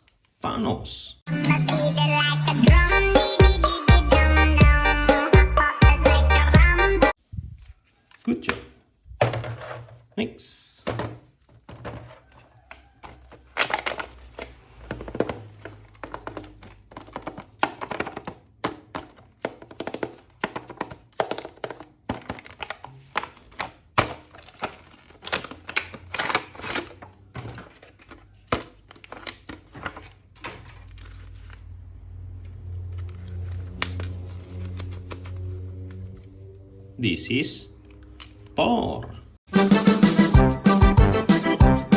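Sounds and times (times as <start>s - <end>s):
plastic packaging clicks and crinkles: 11.4s - 31.7s, 32.4s - 36.1s.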